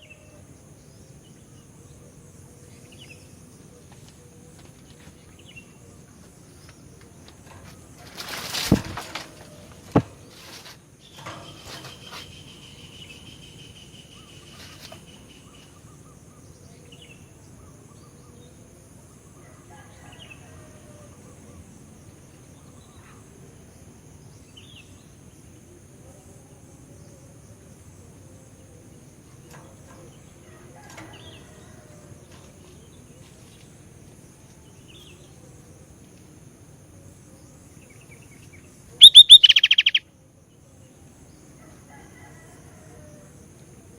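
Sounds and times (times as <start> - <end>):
background hiss: 0.0 - 43.9
faint short bird chirps: 39.0 - 40.0.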